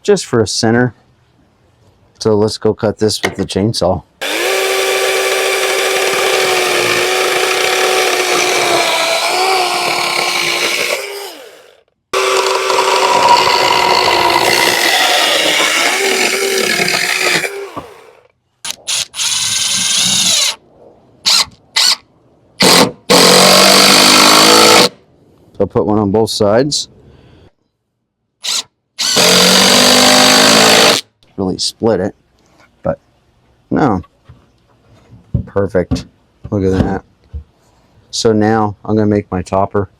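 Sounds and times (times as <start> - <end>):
chainsaw cutting wood: 4.2 - 20.6, 22.6 - 25.0, 28.5 - 31.0.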